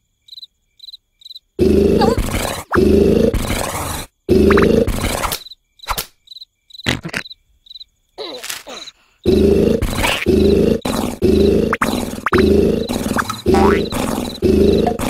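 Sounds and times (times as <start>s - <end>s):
loud snoring: 1.6s - 5.3s, 9.3s - 15.0s
high chirps: 8.7s - 15.0s.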